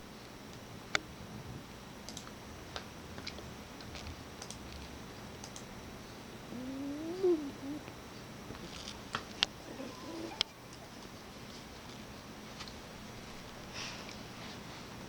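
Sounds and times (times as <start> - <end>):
pet snoring: 6.5 - 7.9
faint clicking breaths: 7.0 - 15.0.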